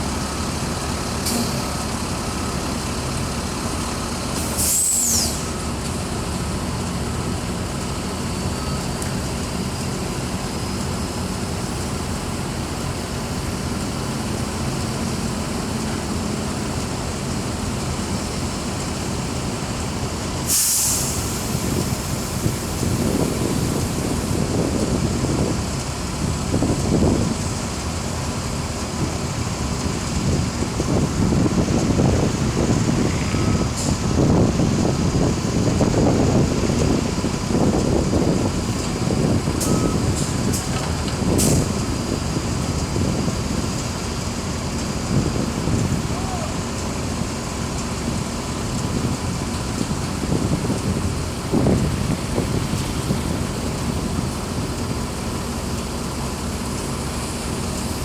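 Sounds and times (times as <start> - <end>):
heavy construction machinery droning: 0.0 - 58.0
air release hisses: 4.4 - 5.6, 20.4 - 24.2, 41.3 - 41.8.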